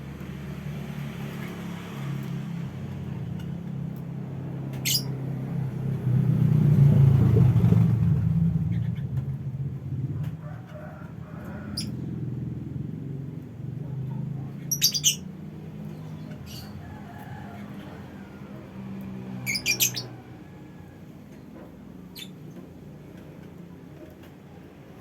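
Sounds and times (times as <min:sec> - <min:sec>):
low engine rumble: 0:00.0 - 0:25.0
lovebirds chirping: 0:04.8 - 0:05.1, 0:14.5 - 0:16.8, 0:19.4 - 0:20.2.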